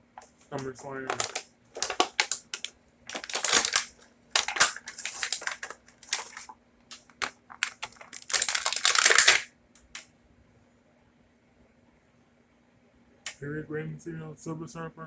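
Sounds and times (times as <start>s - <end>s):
plastic packaging crinkling: 0.3s - 9.5s
packaging torn open by hand: 0.6s - 9.5s.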